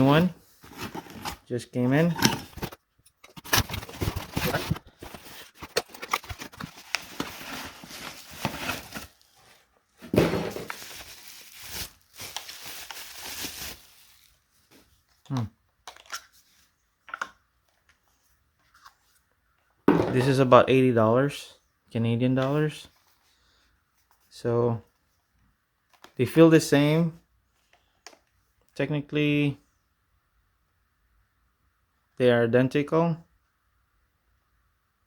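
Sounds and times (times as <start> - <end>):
plastic wrap crinkling: 3.7 - 9.3, 10.5 - 14.4
packaging being torn: 10.7 - 14.2.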